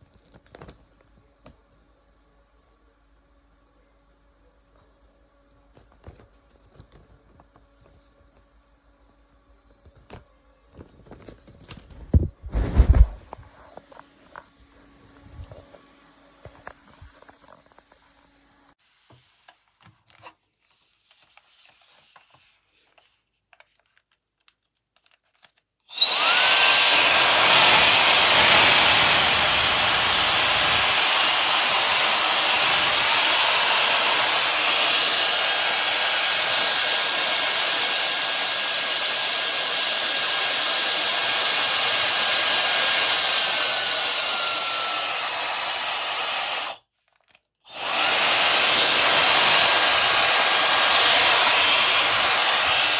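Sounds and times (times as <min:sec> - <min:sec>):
hair dryer blowing: 0:12.5 - 0:13.2, 0:25.9 - 0:46.8, 0:47.7 - 0:52.9.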